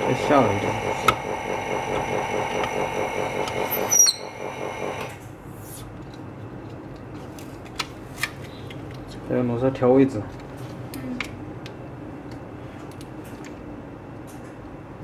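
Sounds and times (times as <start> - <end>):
machine motor running with whine: 0.0 - 5.2
short squeak: 3.8 - 4.3.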